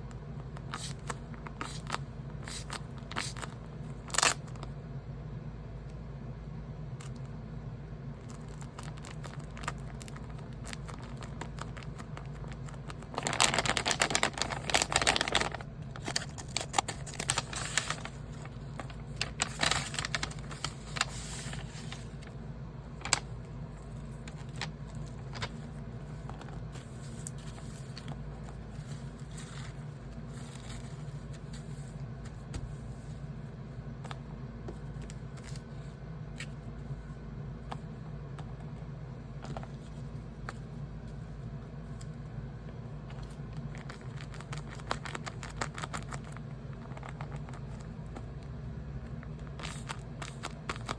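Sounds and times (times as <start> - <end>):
steady low hum: 0.0 - 50.9
paper rustling and crinkling: 0.4 - 4.7, 8.2 - 33.2, 34.1 - 37.0, 43.0 - 48.3, 49.1 - 50.9.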